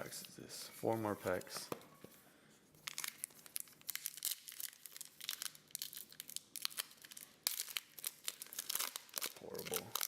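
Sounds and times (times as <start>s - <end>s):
foil wrapper crinkling and tearing: 2.8s - 10.0s.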